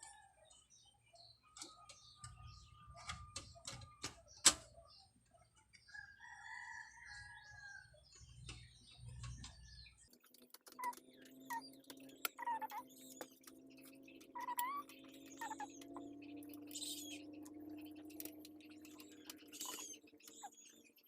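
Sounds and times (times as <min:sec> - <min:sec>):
small clicks and knocks: 0:01.6 - 0:04.7, 0:08.2 - 0:20.5
rooster crowing: 0:05.9 - 0:08.0.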